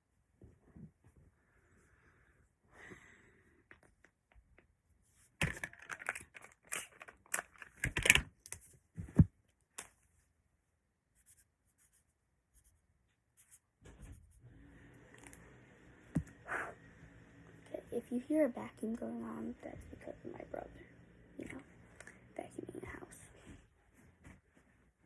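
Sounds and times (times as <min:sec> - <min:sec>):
faint steady hum: 0:14.3 - 0:25.0.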